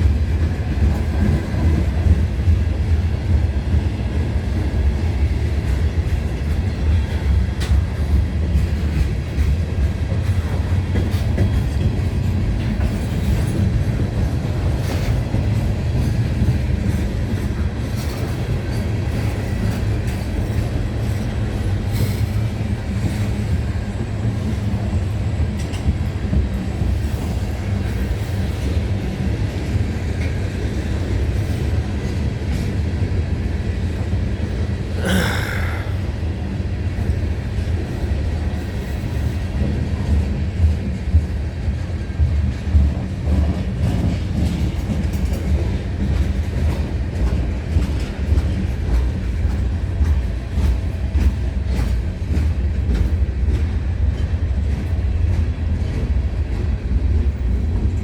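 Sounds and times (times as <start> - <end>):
train wheels rumbling on rail: 0.0 - 58.0.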